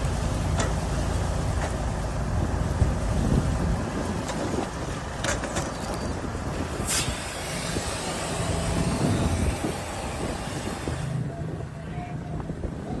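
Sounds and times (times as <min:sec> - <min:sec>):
wind: 0:00.0 - 0:13.0
wildfire roaring: 0:06.2 - 0:11.7
brief hiss: 0:06.8 - 0:09.0.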